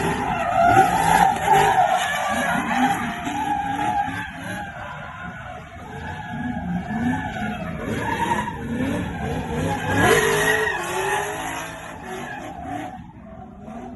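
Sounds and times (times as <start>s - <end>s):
tyres skidding: 0.0s - 13.9s
car engine revving hard: 5.9s - 13.9s.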